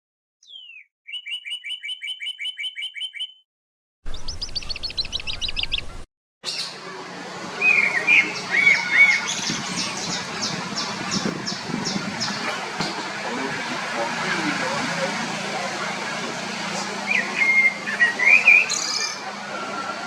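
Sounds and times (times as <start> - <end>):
bird calls: 0.4 - 3.4, 7.5 - 20.0
bird rapid trill: 0.4 - 3.4, 7.6 - 12.5, 17.0 - 19.3
bird chattering: 7.6 - 12.7, 16.7 - 19.3.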